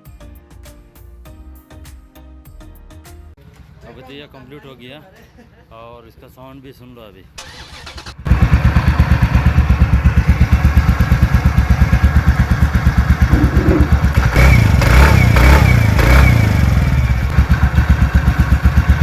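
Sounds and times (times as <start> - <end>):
scooter engine idling and revving: 7.7 - 19.0.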